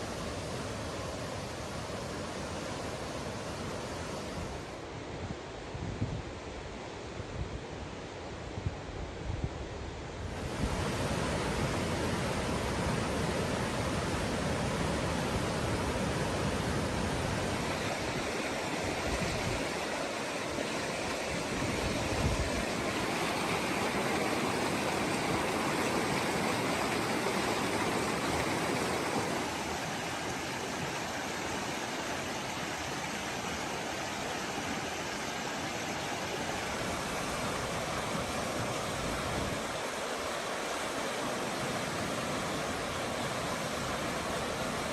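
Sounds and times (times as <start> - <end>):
floodwater rushing: 10.3 - 44.9.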